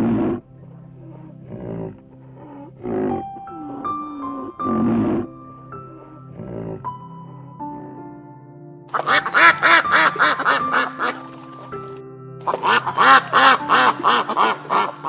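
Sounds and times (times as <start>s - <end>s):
background music: 0.0s - 15.0s
ducks quacking: 8.9s - 11.7s, 12.4s - 15.0s.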